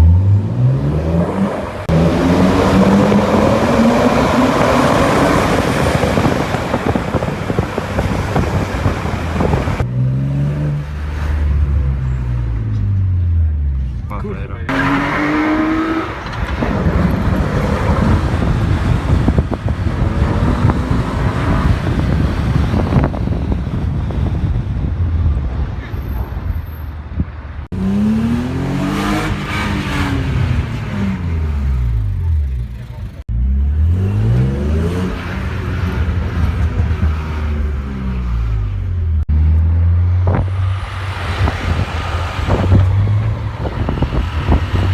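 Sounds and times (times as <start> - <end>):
car engine and exhaust rumbling: 0.0 - 44.9
wind buffeting microphone: 2.4 - 9.9, 15.6 - 27.7, 40.1 - 44.9.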